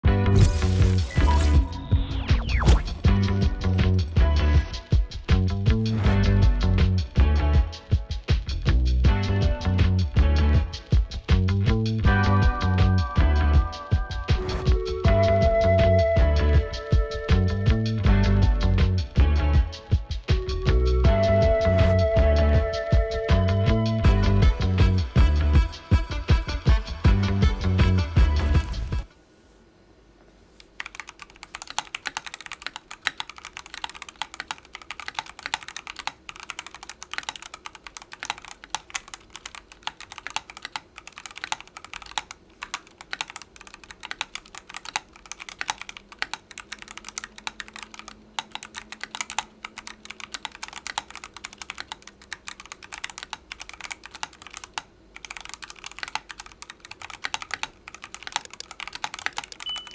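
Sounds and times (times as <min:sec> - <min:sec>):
fast mechanical keyboard typing: 0:02.7 - 0:04.8, 0:30.8 - 0:59.9.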